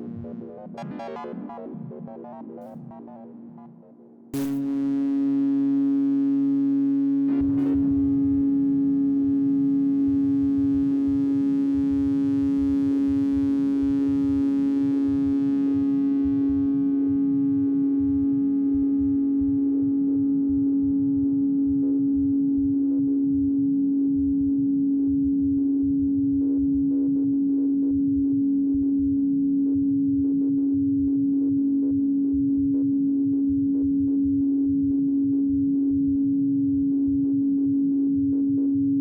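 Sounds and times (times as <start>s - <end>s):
synthesizer drone: 0.0s - 4.5s.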